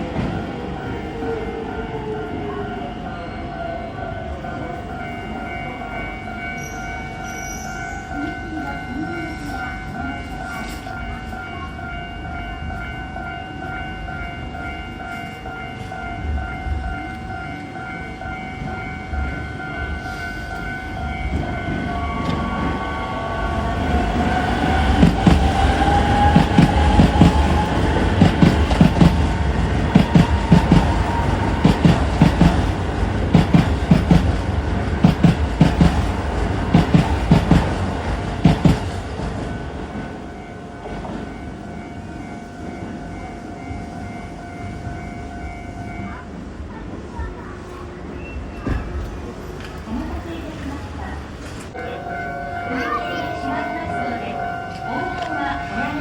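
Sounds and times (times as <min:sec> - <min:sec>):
level crossing warning bell: 0:00.0 - 0:47.3, 0:51.7 - 0:56.0
train wheels clattering: 0:15.2 - 0:43.0
train motor whine: 0:20.5 - 0:32.7, 0:51.7 - 0:56.0.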